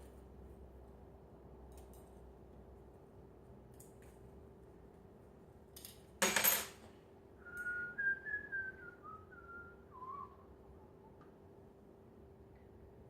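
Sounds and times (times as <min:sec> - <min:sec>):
metal parts clanking: 0:05.8 - 0:06.8
man whistling a tune: 0:07.4 - 0:10.6.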